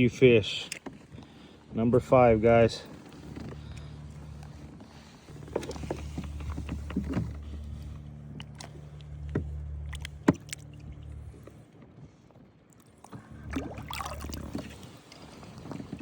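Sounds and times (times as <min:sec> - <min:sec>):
steady low hum: 0:01.0 - 0:11.9, 0:12.6 - 0:16.0
knocks and clicks of gear handled: 0:02.9 - 0:10.7.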